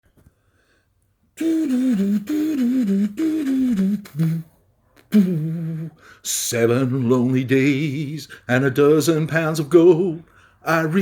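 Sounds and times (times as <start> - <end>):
person humming a melody: 1.4 - 6.1.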